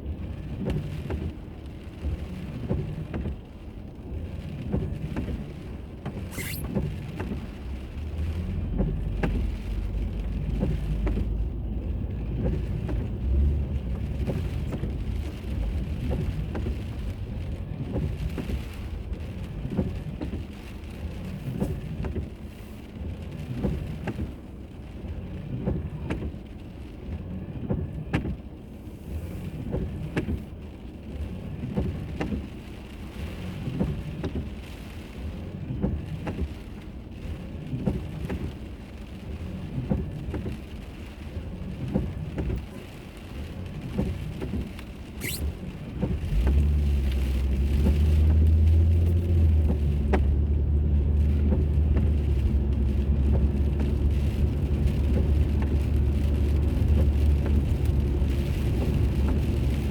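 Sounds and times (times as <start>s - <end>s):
car road and engine rumble: 0.0s - 59.9s
brief high squeak: 6.3s - 6.8s, 45.2s - 45.5s.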